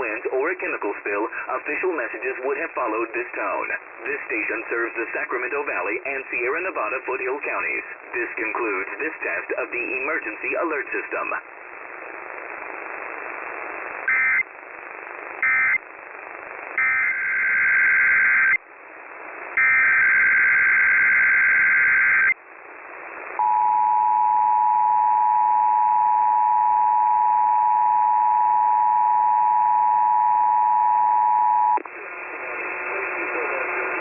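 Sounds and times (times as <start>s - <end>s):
radio hiss: 0.0s - 23.4s, 31.8s - 34.0s.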